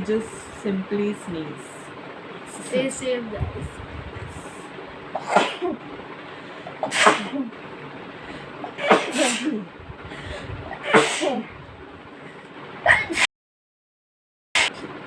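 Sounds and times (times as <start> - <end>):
woman sneezing: 5.2 - 5.8, 6.8 - 7.5, 8.8 - 9.7, 10.7 - 11.5, 12.9 - 13.3.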